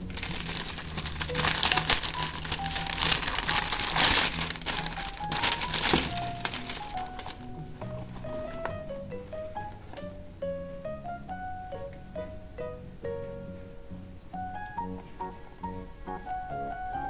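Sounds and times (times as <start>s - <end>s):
packaging crinkling: 0.0s - 8.9s
background music: 0.0s - 17.0s.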